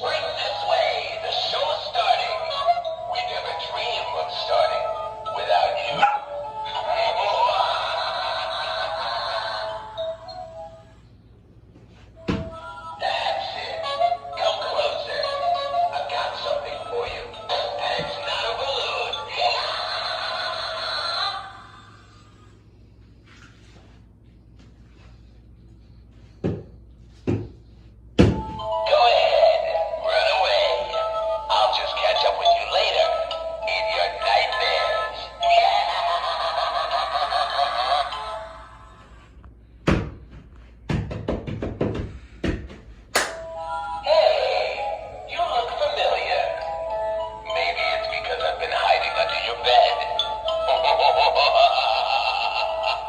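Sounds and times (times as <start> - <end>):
toy speaker music with synthetic singing: 0.0 - 11.0, 12.4 - 22.3, 28.6 - 39.2, 43.6 - 53.0.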